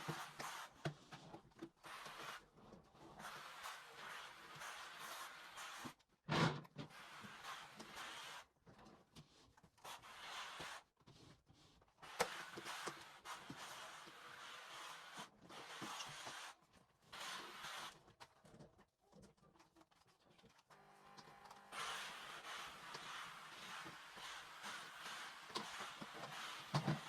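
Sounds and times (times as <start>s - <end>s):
steam mop swishing on floor: 0.0s - 2.4s, 3.1s - 6.0s, 6.8s - 8.5s, 9.8s - 10.8s, 11.6s - 18.0s, 21.7s - 27.0s.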